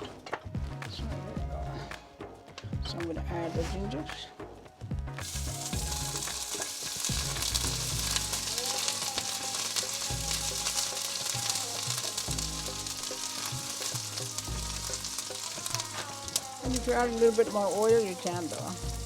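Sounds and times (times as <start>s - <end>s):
ginger sizzling in oil: 5.2s - 19.0s.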